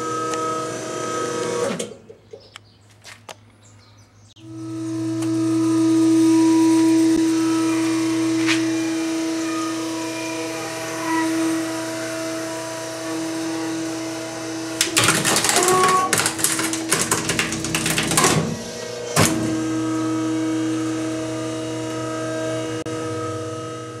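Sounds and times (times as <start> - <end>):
garbage truck compactor humming: 0.0 - 2.1, 4.4 - 24.0
cracking and crunching: 14.8 - 19.5.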